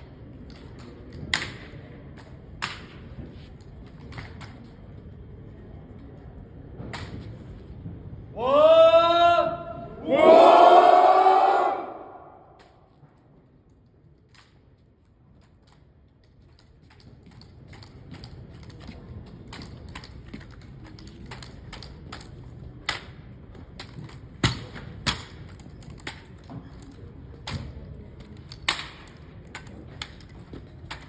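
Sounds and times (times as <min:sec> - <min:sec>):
rifle clacks and hand slaps: 0:00.4 - 0:03.2, 0:06.9 - 0:07.3, 0:21.3 - 0:23.2, 0:28.5 - 0:30.3.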